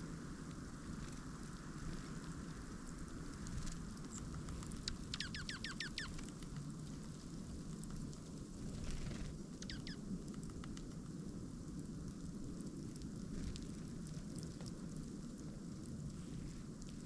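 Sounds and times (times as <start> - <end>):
low background rumble: 0.0 - 17.0
songbird chirping: 5.1 - 6.2, 9.6 - 10.0.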